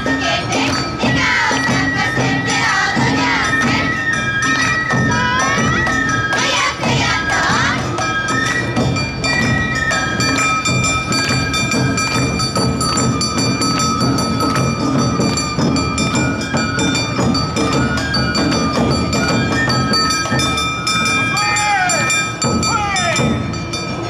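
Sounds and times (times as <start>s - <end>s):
drums: 0.0s - 24.0s
flute: 0.0s - 24.0s.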